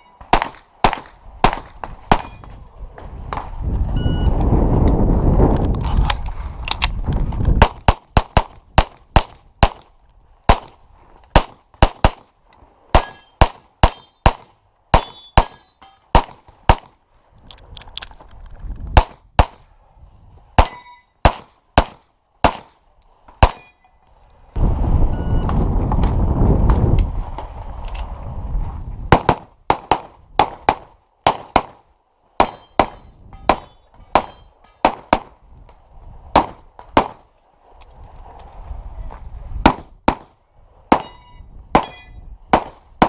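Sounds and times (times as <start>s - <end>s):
steady rushing noise: 16.2s - 43.0s.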